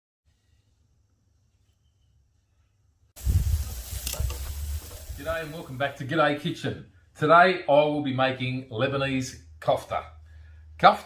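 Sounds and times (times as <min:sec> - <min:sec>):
loud rushing hiss with low rumble: 0:03.2 - 0:06.0.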